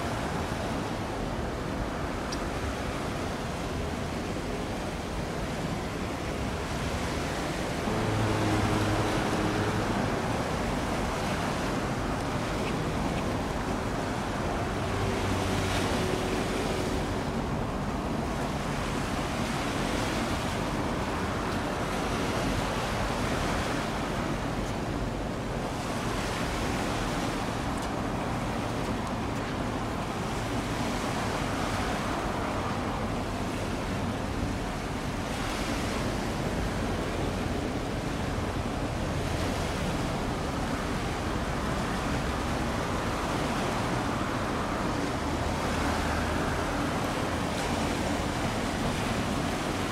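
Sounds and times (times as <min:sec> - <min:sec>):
ship engine drone: 0:02.8 - 0:35.2.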